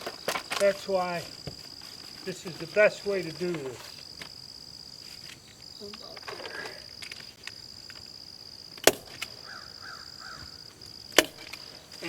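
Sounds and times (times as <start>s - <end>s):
insects trilling: 0.0s - 12.0s
sharp snap: 8.8s - 9.3s.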